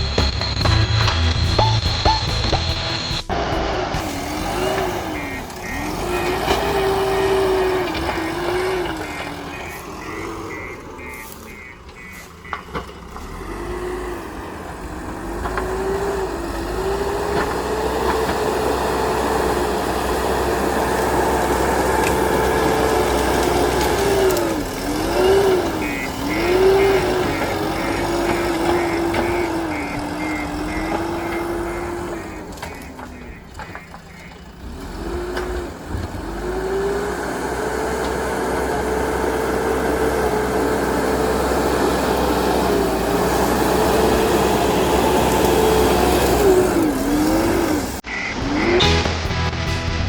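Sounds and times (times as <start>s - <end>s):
diesel engine working under load: 0.0s - 50.0s
fast high-pitched beeping: 9.0s - 12.6s, 25.8s - 34.3s, 48.0s - 49.8s.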